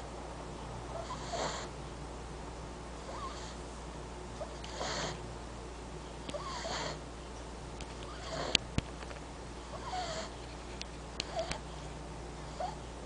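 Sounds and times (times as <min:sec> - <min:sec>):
puppy snoring: 0:00.9 - 0:01.8, 0:03.0 - 0:03.6, 0:04.4 - 0:05.2, 0:06.3 - 0:07.0, 0:08.1 - 0:08.6, 0:09.6 - 0:10.4, 0:11.2 - 0:11.6, 0:12.5 - 0:12.8.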